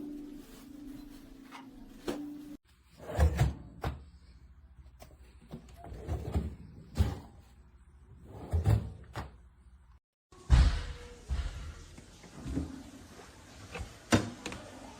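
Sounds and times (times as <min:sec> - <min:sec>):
refrigerator drawers sliding and shutting: 0:03.0 - 0:04.1, 0:05.5 - 0:09.4.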